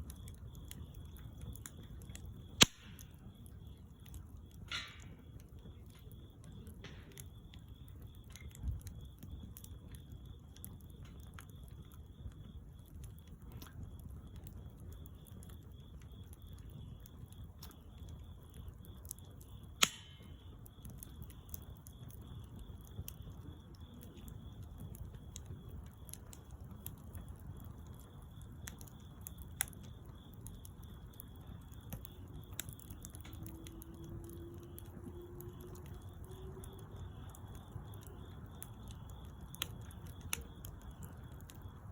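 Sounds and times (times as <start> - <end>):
bonfire crackling: 0.0 - 41.9
sharp loud pop: 2.6 - 3.0.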